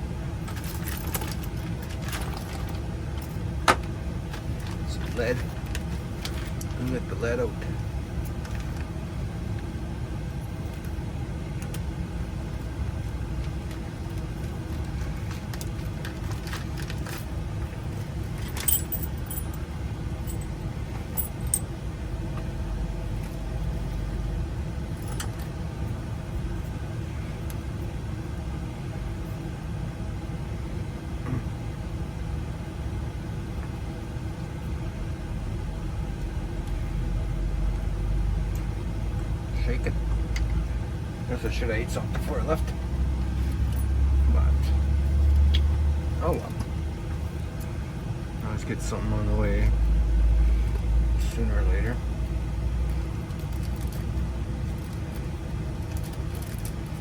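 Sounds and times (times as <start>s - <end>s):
keys jingling and clicking: 18.3s - 19.6s, 20.2s - 21.7s.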